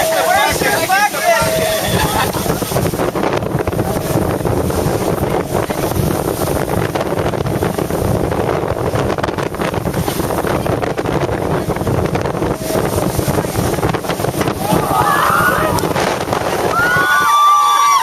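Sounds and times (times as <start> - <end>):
water rushing past hull: 0.0 - 18.0
wind buffeting microphone: 0.0 - 18.0.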